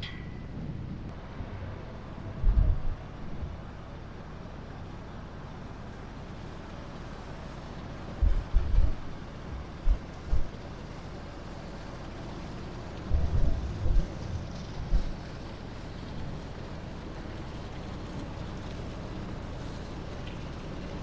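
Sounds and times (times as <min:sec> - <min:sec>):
wind buffeting microphone: 0:00.0 - 0:04.0, 0:07.2 - 0:16.7.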